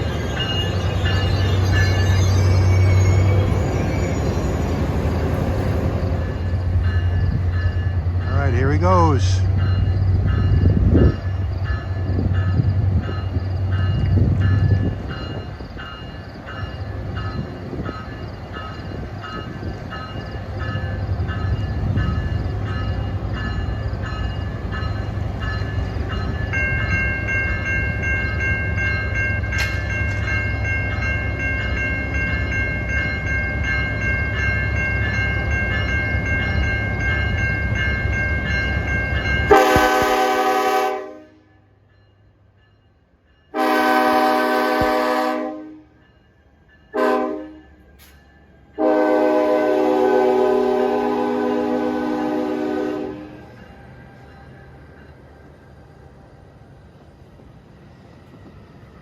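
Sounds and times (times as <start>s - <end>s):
steady high squeal: 0.0s - 8.3s
regular ringing bell: 0.0s - 10.8s
train locomotive running: 0.0s - 59.0s
locomotive air horn blast: 39.5s - 41.5s, 43.6s - 45.8s, 47.0s - 47.6s, 48.8s - 53.4s.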